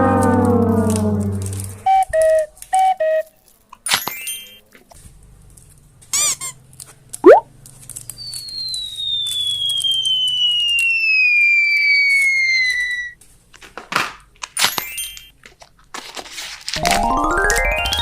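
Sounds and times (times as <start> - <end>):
descending cartoon whistle: 8.2 - 13.2.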